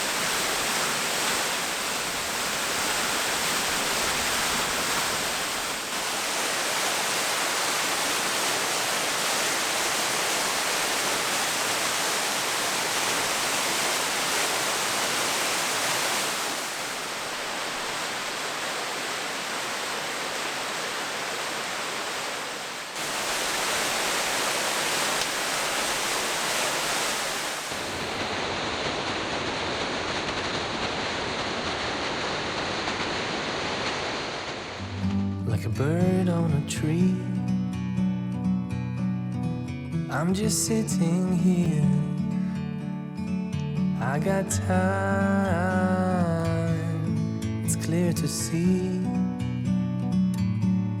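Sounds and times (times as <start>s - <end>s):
waterfall roaring: 0.0s - 35.4s.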